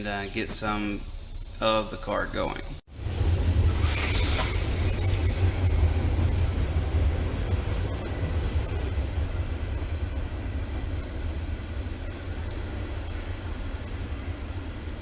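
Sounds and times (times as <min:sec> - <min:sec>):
steady hiss: 0:00.0 - 0:02.8.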